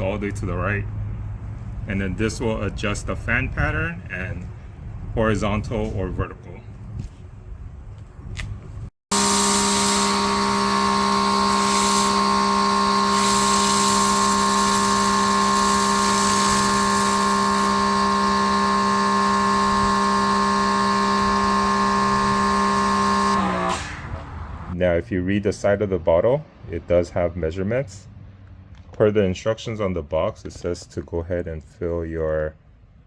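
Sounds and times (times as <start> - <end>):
spray hissing: 9.1 - 23.8
pressure washer motor hum: 9.1 - 24.8.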